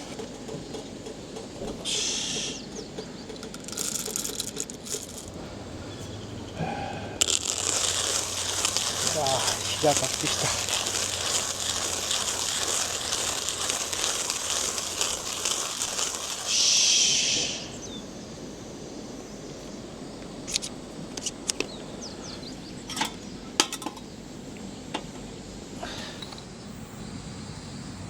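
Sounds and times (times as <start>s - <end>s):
crackly rushing noise: 0.9s - 25.8s
cups or utensils clinking: 22.9s - 24.1s.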